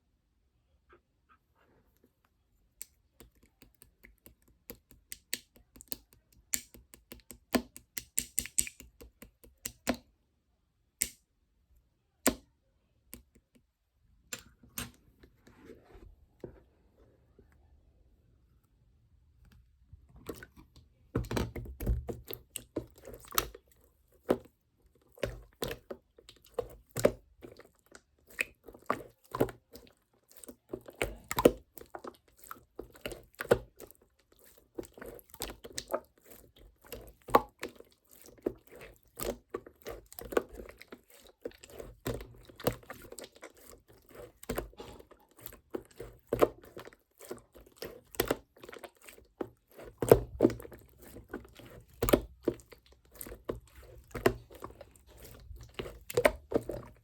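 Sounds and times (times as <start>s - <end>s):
slime squelching and crackling: 20.2s - 57.0s.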